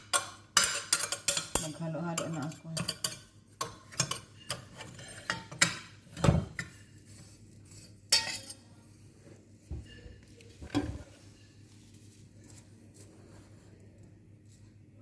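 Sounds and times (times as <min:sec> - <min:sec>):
spoon clinking and scraping container: 0:06.6 - 0:08.6.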